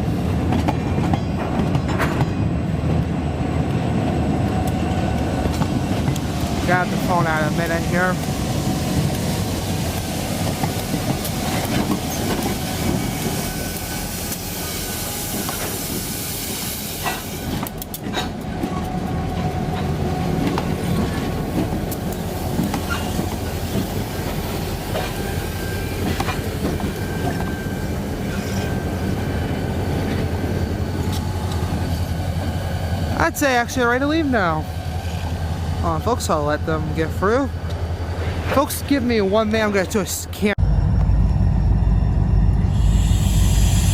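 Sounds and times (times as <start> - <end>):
low train rumble: 0.0 - 43.9
train wheels clicking over rail joints: 7.6 - 14.5
high hiss: 42.7 - 43.9.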